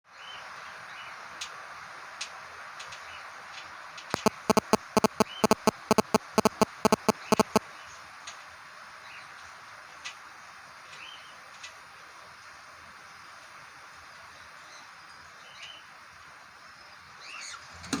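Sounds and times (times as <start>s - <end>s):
steady hiss: 0.1s - 18.0s
loud sharp clicks: 4.0s - 7.6s.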